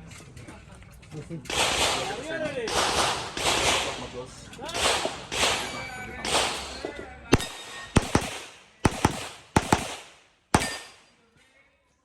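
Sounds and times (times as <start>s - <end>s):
pistol shots echoing: 1.5s - 11.2s.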